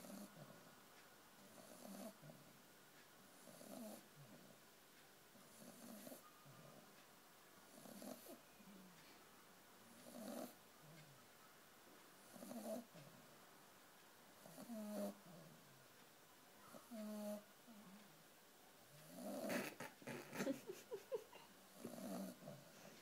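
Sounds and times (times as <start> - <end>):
puppy snoring: 0.0 - 0.7, 1.4 - 2.5, 3.3 - 4.6, 5.4 - 6.8, 7.7 - 8.4, 9.9 - 10.6, 12.2 - 13.0, 14.4 - 15.7, 16.7 - 17.5, 19.0 - 20.6, 21.7 - 22.8.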